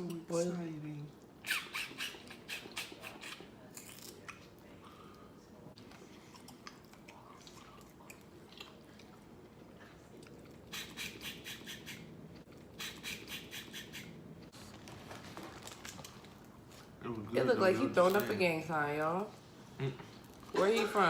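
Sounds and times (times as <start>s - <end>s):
chewing and mouth clicks: 1.2s - 14.2s.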